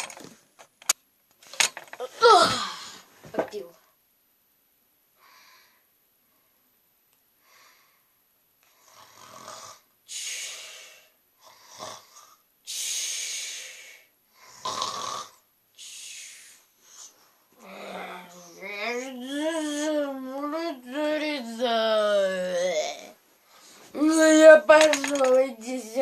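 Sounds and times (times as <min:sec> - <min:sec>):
person snoring: 0:08.8 - 0:19.1.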